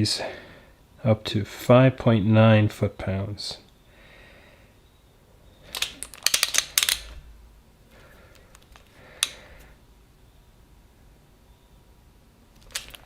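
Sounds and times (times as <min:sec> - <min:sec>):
wrench sharp metallic clicks: 0:05.7 - 0:07.2.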